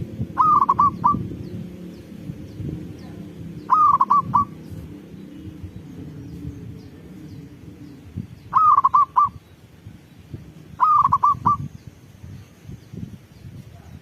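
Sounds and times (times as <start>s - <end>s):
dove cooing: 0.0s - 1.9s, 2.8s - 4.8s, 6.8s - 9.4s, 10.8s - 11.7s
faint low rumbling: 0.0s - 14.0s.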